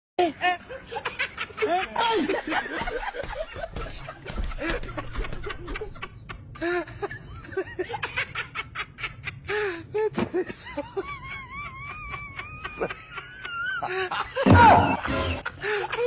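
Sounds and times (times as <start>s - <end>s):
person giggling: 0.2s - 8.4s, 9.1s - 16.0s.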